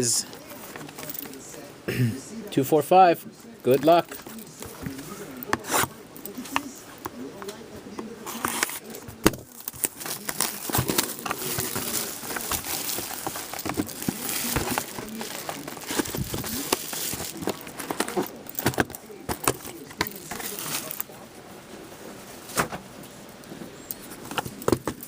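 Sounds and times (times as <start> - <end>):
plastic wrap crinkling and tearing: 8.3 - 21.1.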